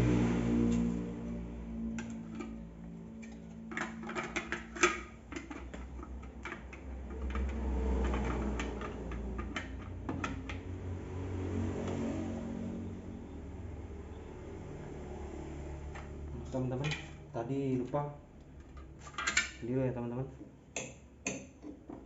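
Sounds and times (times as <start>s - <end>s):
parts clicking and knocking: 1.9s - 11.0s, 18.4s - 19.6s.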